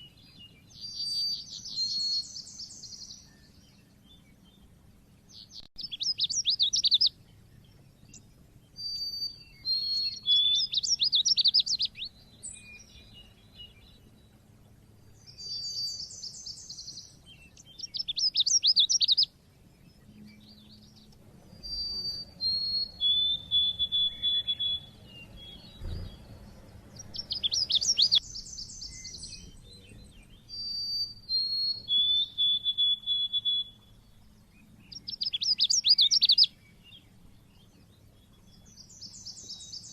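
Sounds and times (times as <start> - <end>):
bird chirping trills: 0.0 - 39.9
bird whistled notes: 8.8 - 13.8, 15.3 - 19.3, 21.5 - 34.0, 34.9 - 36.6.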